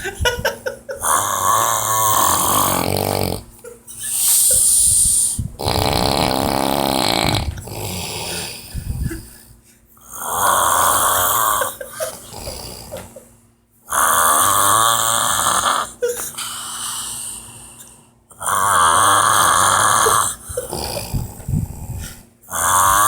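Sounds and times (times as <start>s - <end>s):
person snoring loudly: 1.0s - 9.4s, 10.1s - 13.2s, 13.9s - 17.7s, 18.3s - 23.0s
soft breaths: 20.4s - 22.3s.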